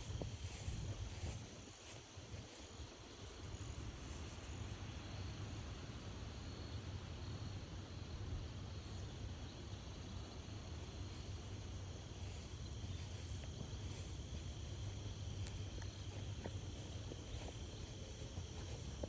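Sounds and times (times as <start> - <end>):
crickets chirring: 0.0 - 6.8, 9.7 - 19.0.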